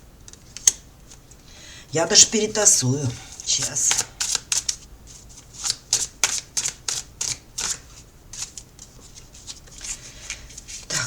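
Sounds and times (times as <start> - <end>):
cards being shuffled: 3.3 - 11.0.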